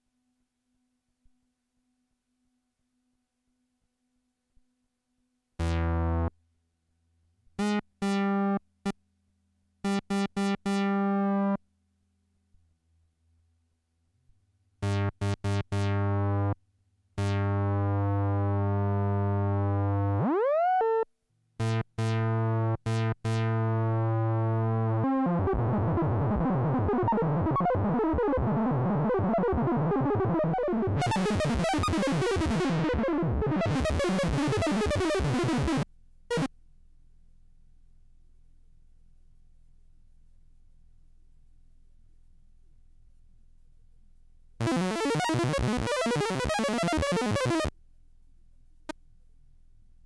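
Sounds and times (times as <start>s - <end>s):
buzzy analogue synthesizer: 5.6s - 6.3s, 17.2s - 36.5s, 44.6s - 47.7s.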